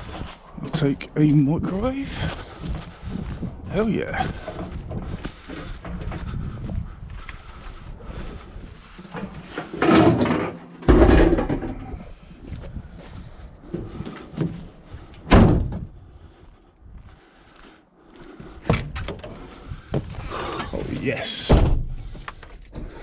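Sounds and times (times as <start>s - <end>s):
bangs of scrap appliances: 9.6s - 11.9s
door slams: 15.3s - 15.9s, 21.3s - 22.1s.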